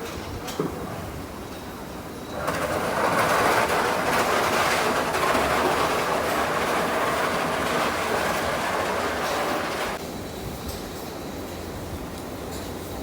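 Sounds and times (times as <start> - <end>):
loud mechanical clatter: 2.3 - 10.0.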